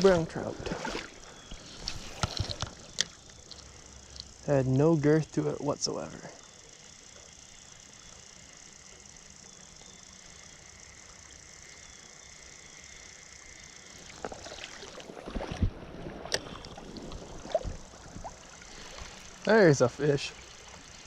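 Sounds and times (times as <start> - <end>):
water splashing and sloshing: 0.0 - 3.6, 13.9 - 21.0
flowing river water: 0.0 - 4.3, 13.8 - 21.0.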